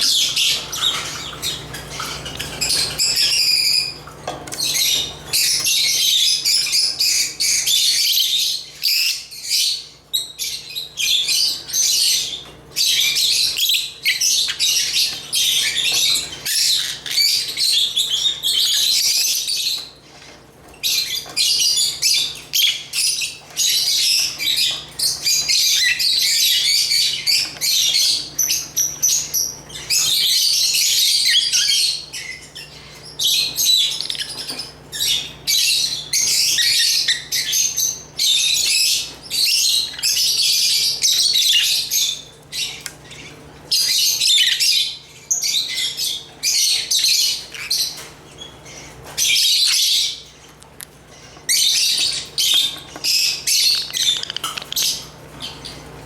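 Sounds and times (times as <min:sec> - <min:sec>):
lovebirds chirping and squawking: 0:00.0 - 0:56.0.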